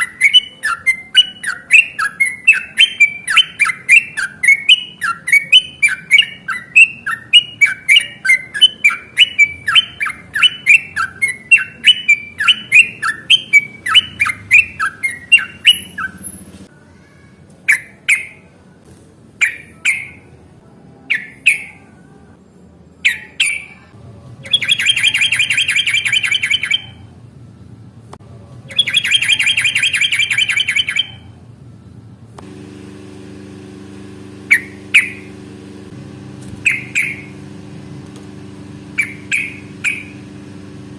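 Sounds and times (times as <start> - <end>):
bulbul calling: 0.0 - 16.5, 24.4 - 27.1, 28.7 - 31.3, 34.3 - 35.4, 36.6 - 37.4, 38.9 - 40.4.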